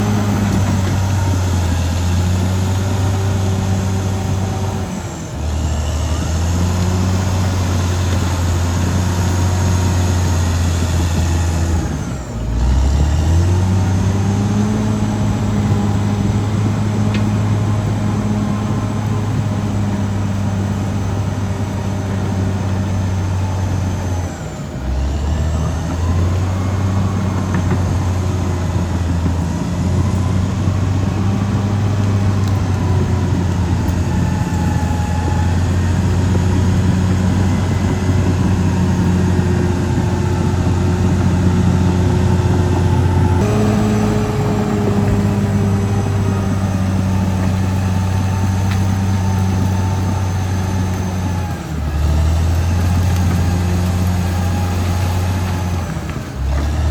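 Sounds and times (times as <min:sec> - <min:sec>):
bulldozer diesel engine droning: 0:00.0 - 0:56.9.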